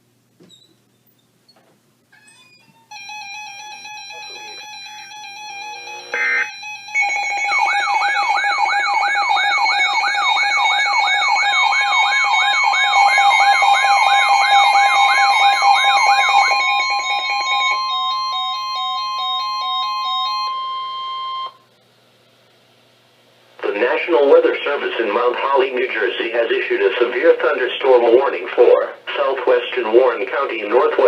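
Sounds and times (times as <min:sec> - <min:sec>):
stepped beeping melodies: 0:02.9 - 0:21.6
steady electronic tone: 0:04.1 - 0:18.1
warbling siren sweep: 0:05.6 - 0:18.6.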